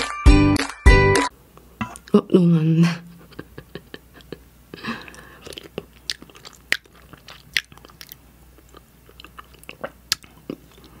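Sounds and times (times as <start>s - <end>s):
biting and chewing: 5.0s - 11.0s
wet mouth clicks: 5.0s - 11.0s.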